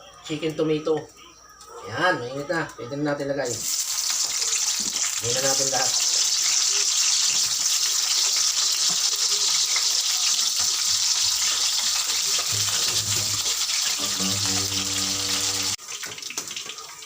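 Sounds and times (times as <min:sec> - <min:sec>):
potatoes sizzling in hot oil: 0:03.4 - 0:17.0.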